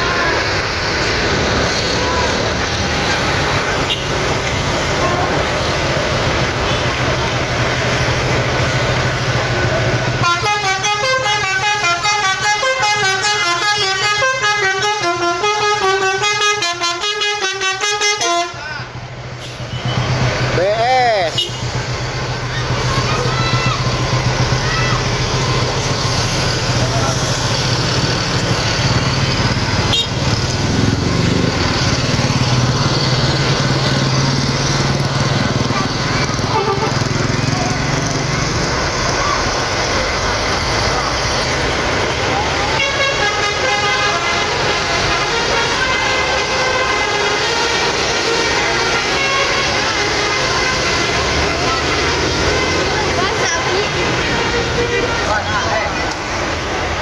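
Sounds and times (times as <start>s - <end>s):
bus engine humming: 0.0s - 57.0s
road noise: 0.0s - 57.0s
bus musical horn tune: 10.2s - 18.6s, 29.8s - 30.3s, 36.3s - 38.0s, 42.7s - 55.3s
motorcycle engine running: 28.9s - 38.8s.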